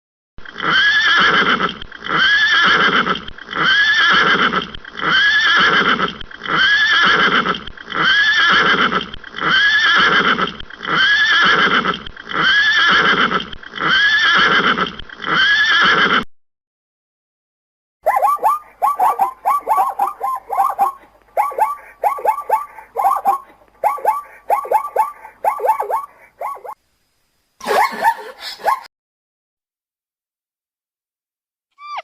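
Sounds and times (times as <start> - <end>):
horse neighing: 0.6 - 16.3, 18.1 - 26.8.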